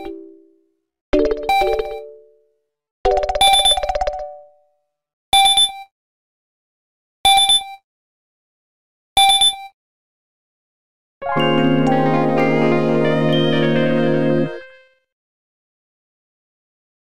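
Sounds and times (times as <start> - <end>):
musical phone alert tone: 0.0 - 0.3, 1.2 - 2.2, 3.1 - 4.5.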